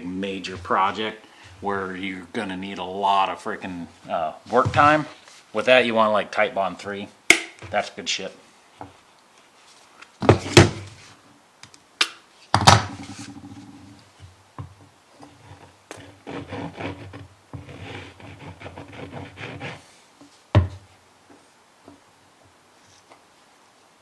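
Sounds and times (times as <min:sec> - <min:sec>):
wood rubbing and scraping: 0:00.0 - 0:05.7, 0:12.8 - 0:20.5.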